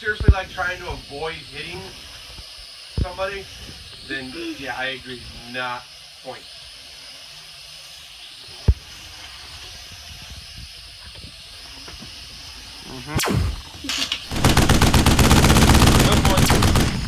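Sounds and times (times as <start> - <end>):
quadcopter propellers hissing: 0.0 - 17.0
machine-gun sound effects: 13.2 - 13.6, 14.3 - 17.0.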